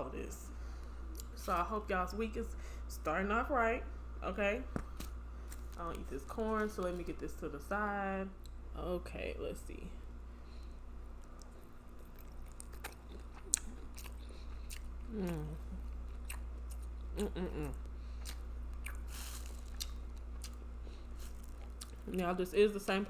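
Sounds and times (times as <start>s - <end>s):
person chewing and biting: 11.0s - 22.1s
falling hummed vocal sounds: 17.1s - 18.2s.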